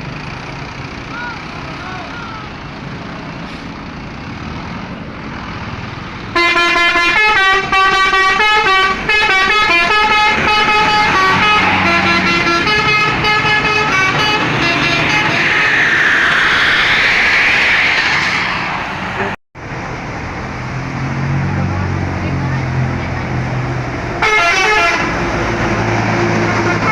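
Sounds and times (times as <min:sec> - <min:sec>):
bus engine running: 0:00.0 - 0:26.9
rushing noise: 0:05.2 - 0:22.1
bus horn playing a fast tune: 0:06.4 - 0:15.8, 0:24.2 - 0:25.2, 0:26.4 - 0:26.9.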